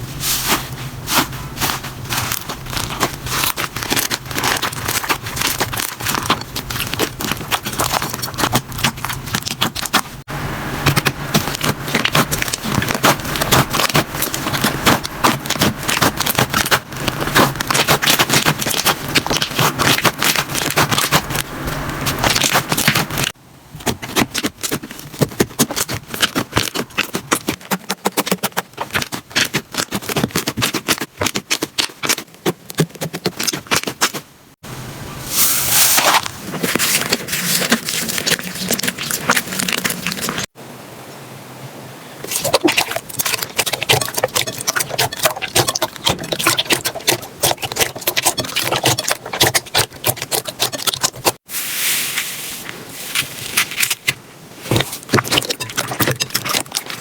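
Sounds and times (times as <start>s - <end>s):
slime crackling and popping: 1.1s - 10.2s, 10.8s - 34.2s, 35.8s - 40.5s, 42.3s - 51.4s, 53.1s - 57.0s.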